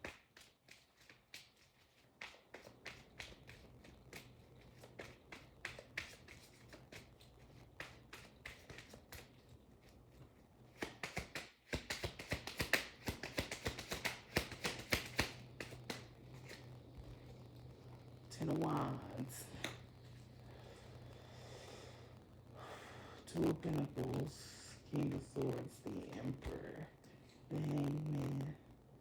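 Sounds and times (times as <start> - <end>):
cards being shuffled: 0.0 - 17.3.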